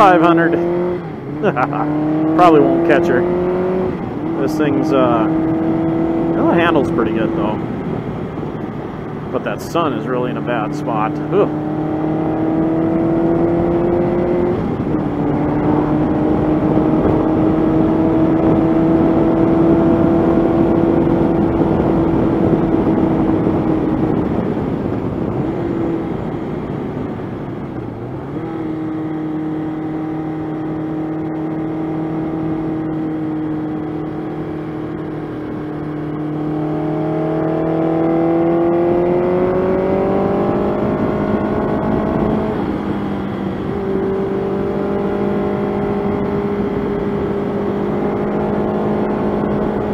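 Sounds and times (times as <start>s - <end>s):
motorcycle engine running: 0.0s - 49.9s.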